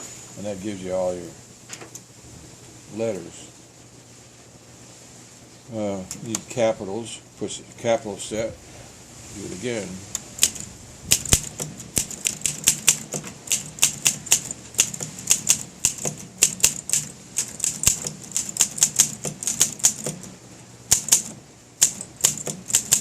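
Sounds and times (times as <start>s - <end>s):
manual typewriter typing: 10.4s - 20.3s, 20.9s - 23.0s.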